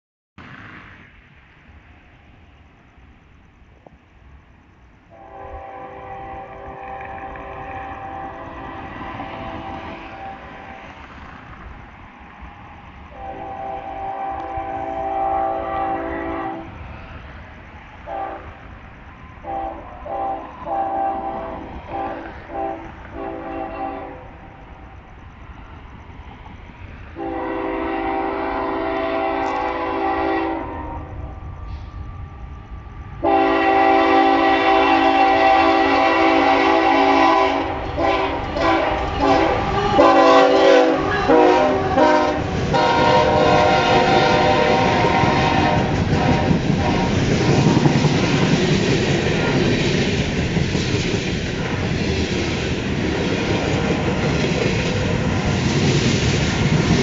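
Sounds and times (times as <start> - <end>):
train rumbling past: 0.4 - 57.0
locomotive air horn blasts: 5.1 - 10.8, 13.1 - 16.7, 18.1 - 18.6, 19.4 - 24.4, 27.2 - 31.2, 33.2 - 47.8
train wheel clatter: 5.5 - 15.0, 35.0 - 57.0.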